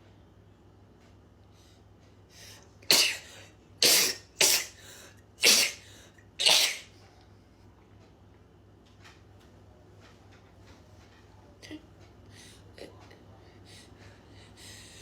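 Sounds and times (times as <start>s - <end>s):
woman sneezing: 2.9s - 4.8s, 5.4s - 5.8s, 6.4s - 6.9s.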